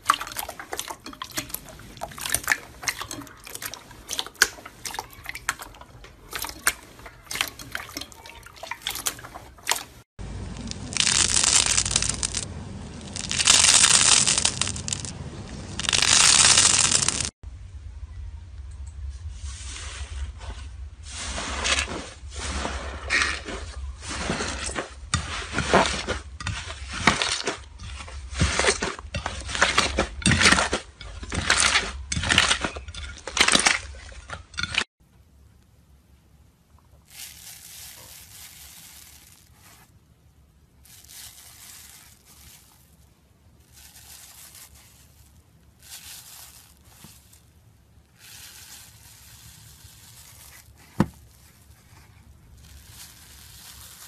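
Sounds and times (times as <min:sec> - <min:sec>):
slime soft squishes: 0:00.0 - 0:12.5, 0:36.7 - 0:54.0
slime crackling and popping: 0:00.0 - 0:15.1, 0:15.7 - 0:17.3, 0:37.0 - 0:39.9, 0:40.8 - 0:43.0, 0:43.6 - 0:54.0.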